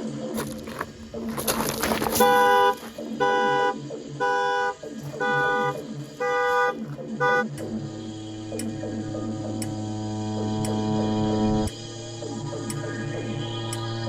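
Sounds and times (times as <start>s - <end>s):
car alarm horn blasts: 2.2s - 7.9s.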